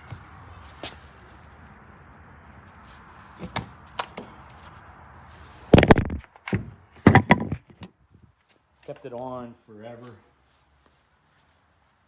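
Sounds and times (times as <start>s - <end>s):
light handling knocks: 3.4s - 4.6s
clattering bursts: 5.7s - 7.9s.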